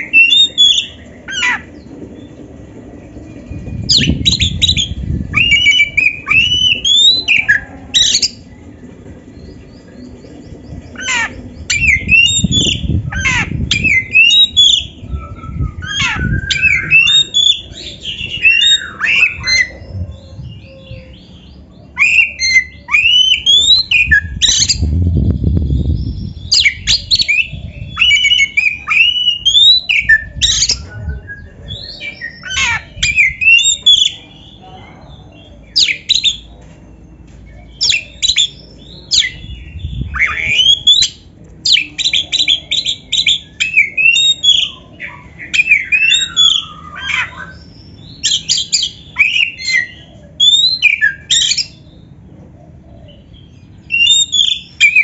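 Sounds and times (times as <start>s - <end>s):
low rumble: 0.8s - 21.4s, 24.0s - 28.1s, 38.8s - 40.6s
bird singing whistled phrases: 3.8s - 8.4s, 11.7s - 19.8s, 37.8s - 51.8s, 53.9s - 55.0s.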